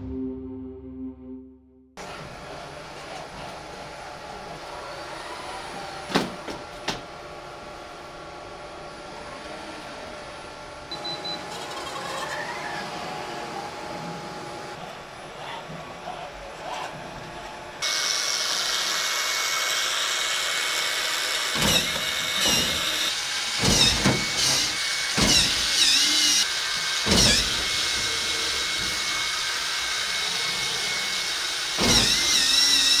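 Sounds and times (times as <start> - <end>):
power drill whining: 11.4 - 14.6, 17.8 - 33.0.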